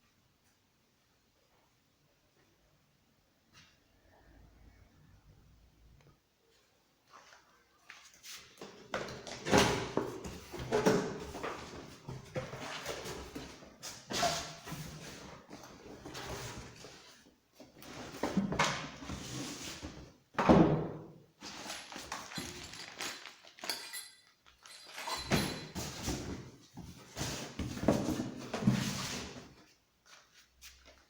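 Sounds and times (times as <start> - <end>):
packaging rustling and scraping: 21.4 - 23.8, 24.5 - 31.0.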